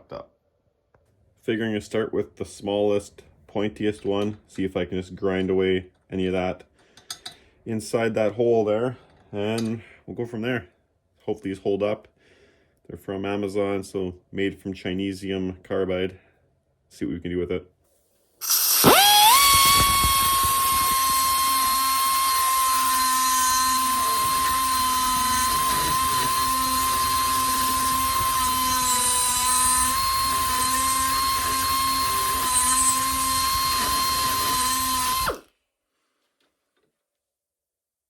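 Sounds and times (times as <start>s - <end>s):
die grinder whine: 18.4s - 35.5s.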